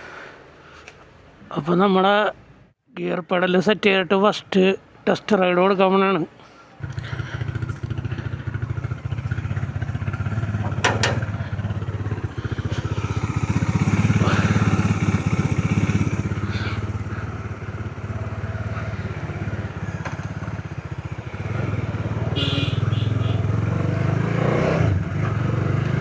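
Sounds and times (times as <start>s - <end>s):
motorcycle engine running: 6.8s - 26.0s.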